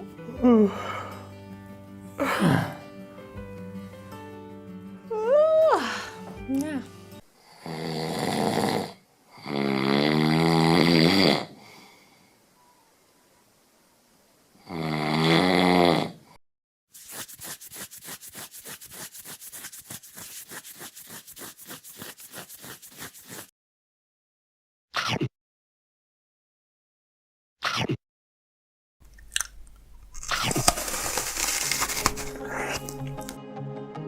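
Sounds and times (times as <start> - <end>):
person snoring: 7.4 - 12.1, 14.6 - 16.3, 32.2 - 33.4
fast scratching strokes: 16.9 - 23.5, 30.2 - 33.4.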